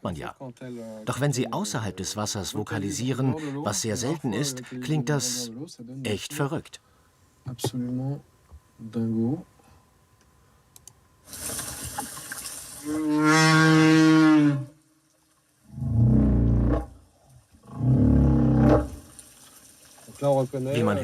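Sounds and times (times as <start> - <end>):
whale calling: 12.8 - 14.8, 15.7 - 17.0, 17.7 - 19.0.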